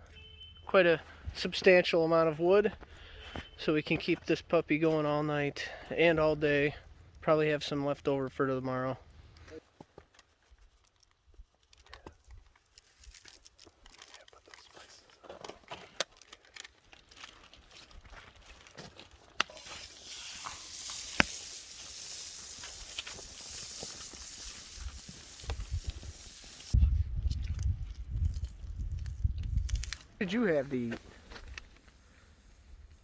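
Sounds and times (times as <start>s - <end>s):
wood fire crackling and popping: 9.0s - 32.0s
steady loud hiss: 19.5s - 26.8s.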